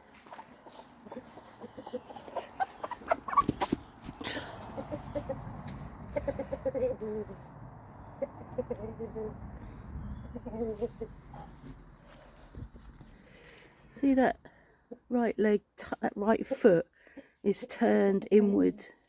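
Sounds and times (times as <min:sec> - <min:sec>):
hens clucking: 0:00.0 - 0:15.1, 0:16.2 - 0:18.1
sharp knocks and rustles: 0:03.0 - 0:04.7.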